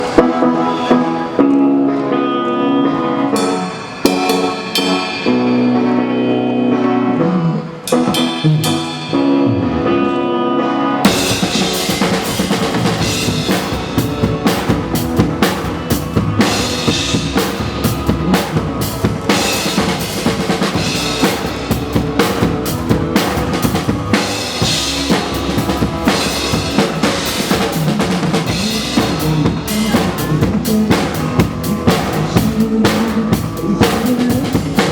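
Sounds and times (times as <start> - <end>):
pop backing track: 0.0 - 34.9
drum kit groove: 3.4 - 6.2, 11.0 - 34.9.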